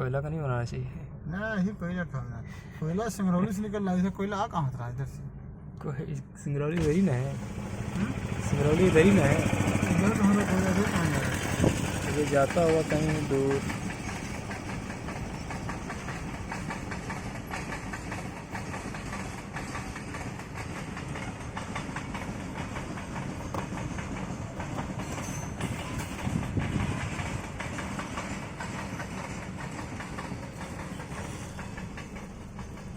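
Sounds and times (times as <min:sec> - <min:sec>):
freight train rumbling: 0:00.0 - 0:32.9
train wheels clacking on rails: 0:06.8 - 0:32.9.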